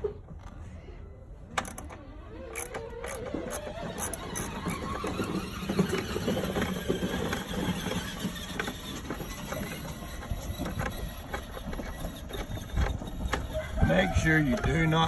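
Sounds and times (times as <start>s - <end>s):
metal squeaks and knocks: 1.6s - 15.0s
hand ratchet clicking: 2.5s - 5.2s.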